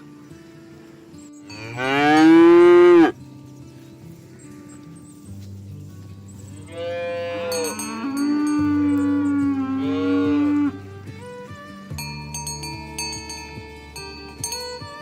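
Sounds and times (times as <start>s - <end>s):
cow mooing: 1.6s - 3.2s, 6.7s - 10.9s.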